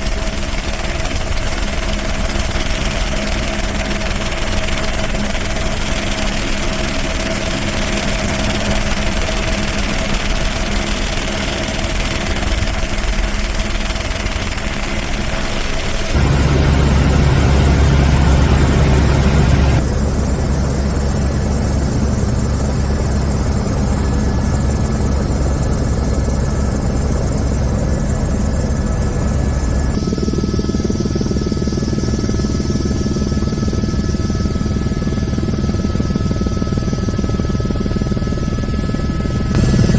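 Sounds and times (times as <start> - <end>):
engine droning: 16.0 - 20.1, 39.6 - 39.9.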